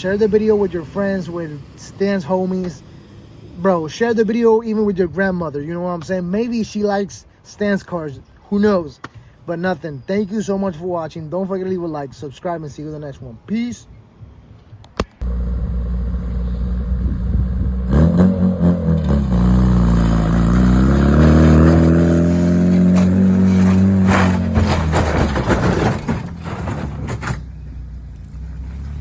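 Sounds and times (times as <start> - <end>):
car engine revving: 15.2 - 27.2.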